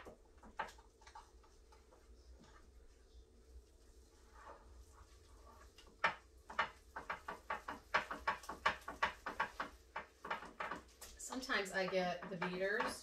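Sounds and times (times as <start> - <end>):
wooden spoon beating in a bowl: 4.8 - 13.0.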